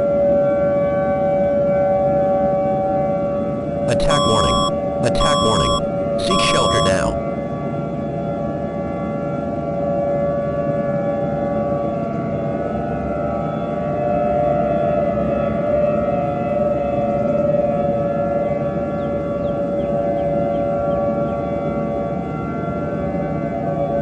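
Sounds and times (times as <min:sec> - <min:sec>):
siren steady tone: 0:03.9 - 0:07.2.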